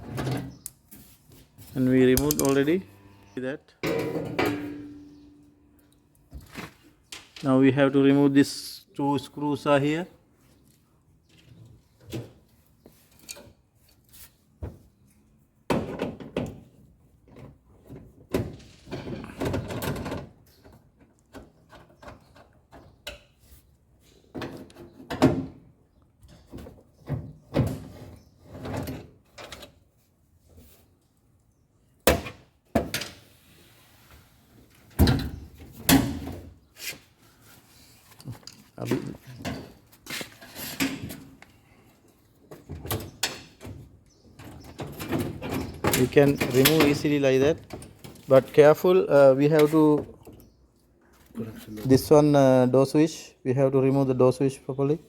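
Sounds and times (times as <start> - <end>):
clicks and knocks of metal panels: 3.8 - 5.5, 15.7 - 23.4, 42.5 - 48.3.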